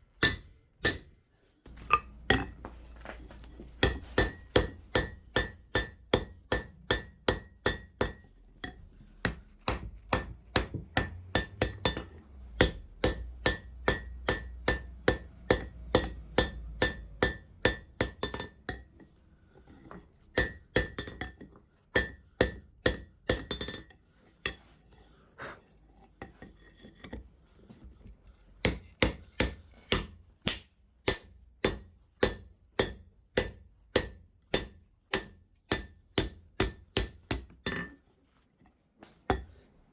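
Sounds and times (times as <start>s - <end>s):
hammer ringing on steel anvil: 0.2s - 1.1s, 3.8s - 8.3s, 11.0s - 18.5s, 20.4s - 21.1s.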